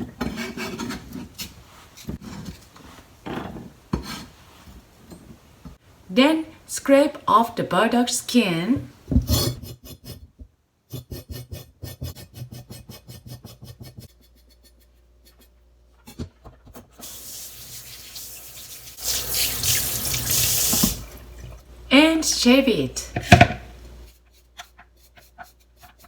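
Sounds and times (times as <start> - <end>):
water tap running: 17.0 - 21.7.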